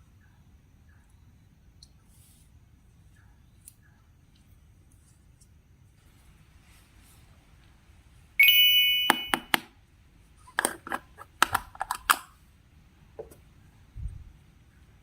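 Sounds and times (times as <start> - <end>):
bright ringing ding: 8.4 - 9.6
sharp clicks and taps: 9.0 - 9.7.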